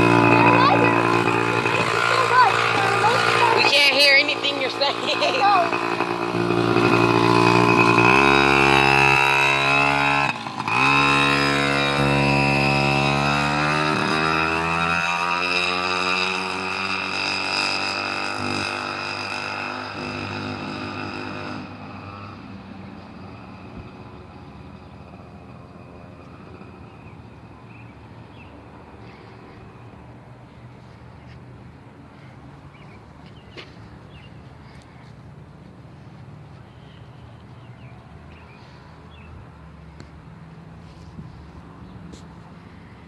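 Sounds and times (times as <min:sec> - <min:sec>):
mini motorcycle engine revving: 0:00.0 - 0:30.0.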